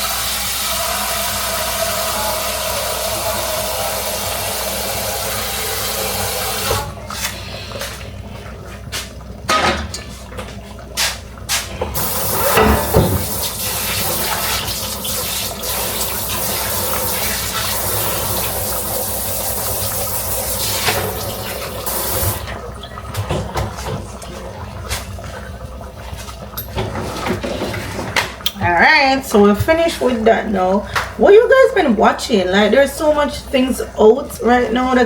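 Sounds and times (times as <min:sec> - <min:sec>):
tap water running into sink: 0:00.0 - 0:08.1, 0:08.9 - 0:27.6.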